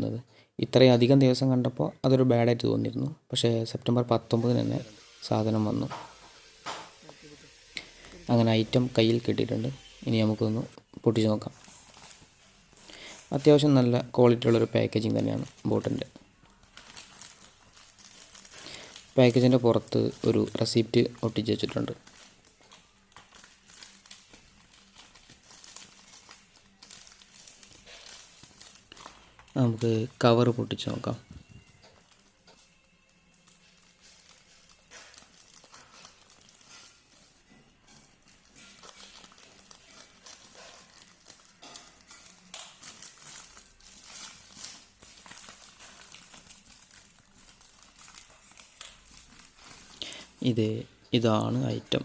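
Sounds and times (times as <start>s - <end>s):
package cover rustling: 4.4s - 52.0s.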